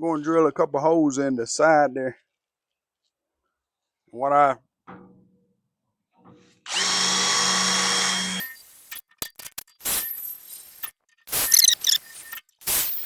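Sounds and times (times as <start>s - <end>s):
electric drill boring metal: 6.7s - 13.0s.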